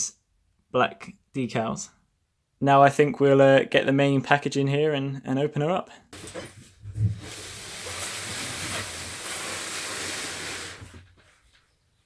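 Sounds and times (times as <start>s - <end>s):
cardboard box scraping: 6.2s - 11.4s.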